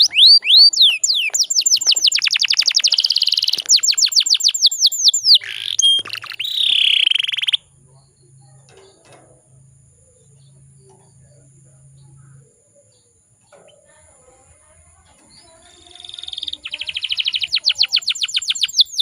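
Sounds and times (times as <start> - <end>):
canary singing trills: 0.0 - 9.0, 9.9 - 19.0
faint low hum: 0.0 - 19.0.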